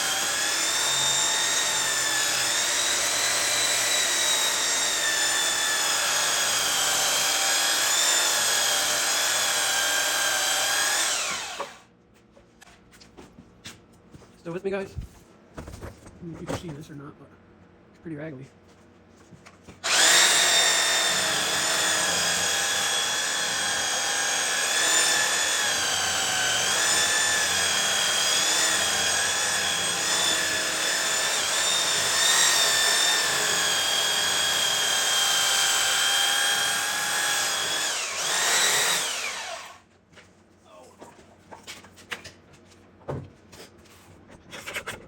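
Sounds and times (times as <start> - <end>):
power sander whining: 0.0 - 11.8, 19.8 - 39.8.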